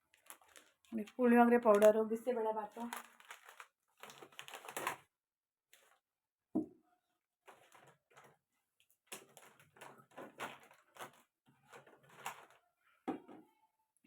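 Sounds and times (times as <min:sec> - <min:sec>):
plastic packets rustling: 0:00.0 - 0:05.1, 0:07.5 - 0:08.4, 0:09.1 - 0:12.8.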